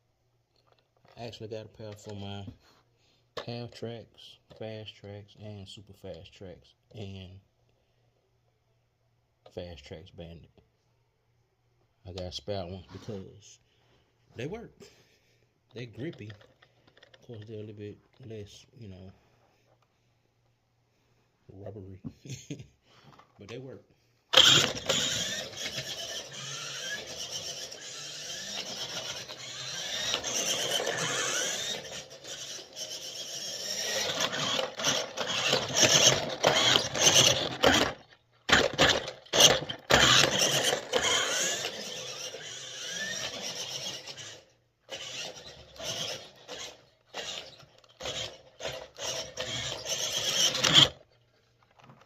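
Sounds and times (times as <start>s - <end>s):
toy car motor whining: 16.0s - 17.7s, 24.3s - 51.2s
plastic treads clattering: 24.4s - 51.0s.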